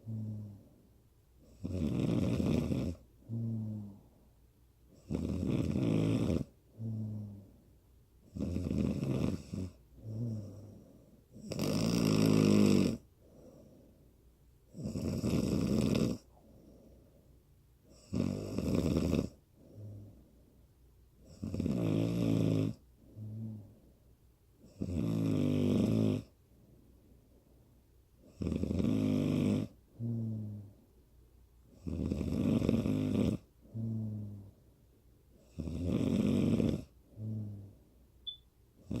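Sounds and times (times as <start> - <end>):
woman snoring: 0.0 - 0.6, 1.5 - 4.0, 5.0 - 7.4, 8.3 - 10.8, 11.4 - 13.0, 14.7 - 16.3, 17.9 - 20.1, 21.3 - 23.7, 24.7 - 26.3, 28.3 - 30.7, 31.8 - 34.5, 35.5 - 37.7.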